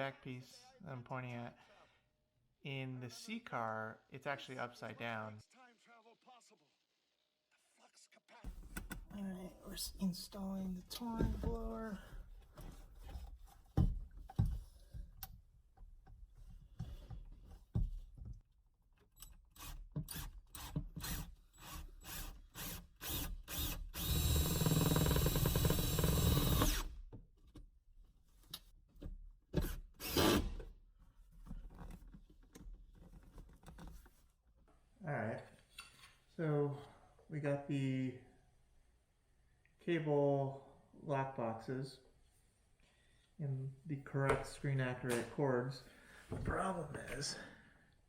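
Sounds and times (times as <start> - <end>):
power drill running: 19.6 - 26.9, 30.0 - 30.4.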